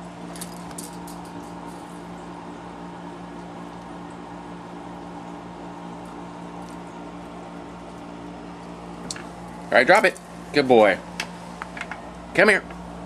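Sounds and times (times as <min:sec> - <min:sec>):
electrical or fan hum: 0:00.0 - 0:13.0.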